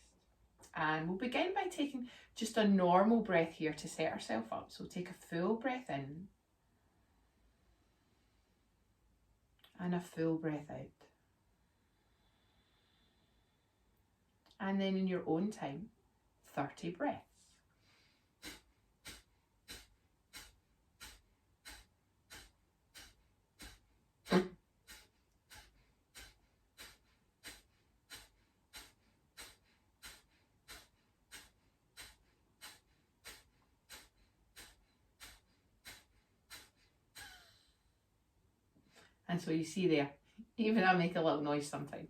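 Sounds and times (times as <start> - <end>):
forced nasal exhalations: 11.7 - 14.0, 17.4 - 38.0
long breath out: 11.7 - 14.0, 17.7 - 38.0.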